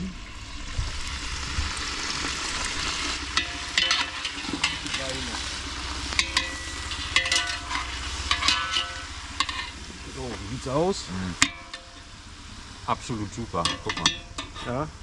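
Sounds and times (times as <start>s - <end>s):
onions sizzling in a pot: 0.0s - 15.0s
spoon scraping and clinking pot: 3.3s - 5.1s, 6.1s - 9.8s, 13.6s - 14.8s.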